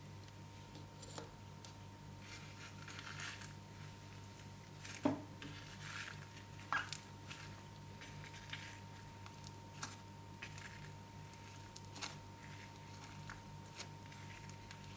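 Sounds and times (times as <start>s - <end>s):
slime squishing and crackling: 4.4s - 14.9s.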